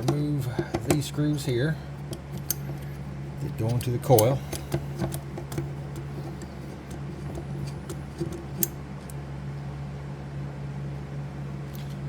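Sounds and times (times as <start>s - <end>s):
steady low hum: 0.0s - 12.0s
screwdriver and metal parts clicking: 2.1s - 2.9s.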